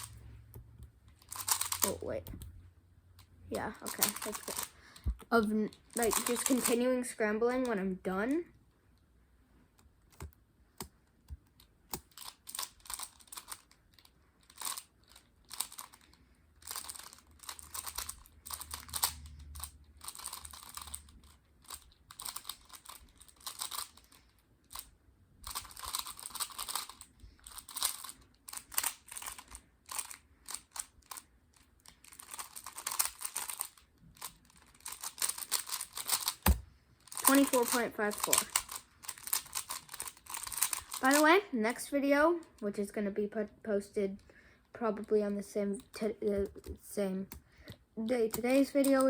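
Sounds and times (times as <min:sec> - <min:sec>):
puzzle cube turns clicking: 0:01.1 - 0:02.5, 0:03.2 - 0:06.9, 0:09.8 - 0:41.3, 0:45.8 - 0:49.0.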